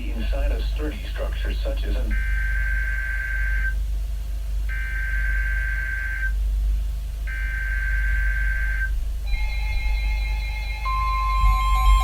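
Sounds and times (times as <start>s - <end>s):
buzzy data bursts: 0.0s - 3.8s, 4.6s - 6.4s, 7.3s - 12.0s.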